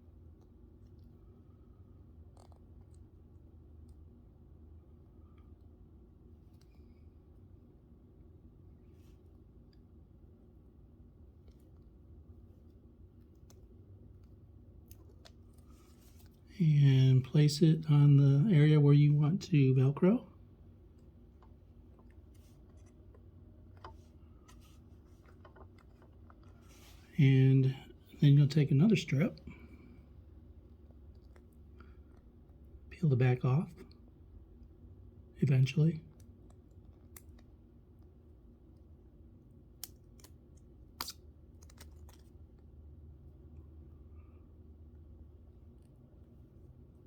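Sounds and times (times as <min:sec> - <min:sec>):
low steady hum: 0:00.0 - 0:47.0
velcro strip clicks and crackles: 0:39.7 - 0:42.4.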